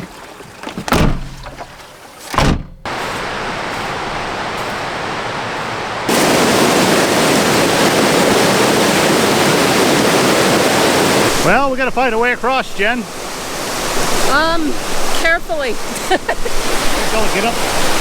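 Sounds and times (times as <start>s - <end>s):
dull thumps: 0.0s - 3.2s
stream rushing: 0.0s - 18.0s.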